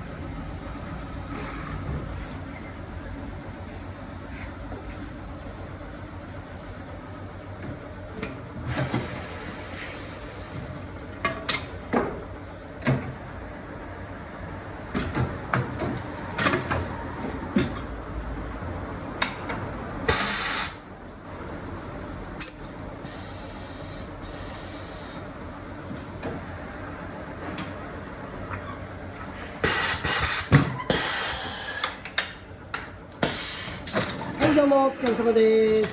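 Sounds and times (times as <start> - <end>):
air hissing bursts: 8.7 - 10.8, 20.1 - 20.9, 23.0 - 25.2, 29.6 - 32.4, 33.2 - 35.3.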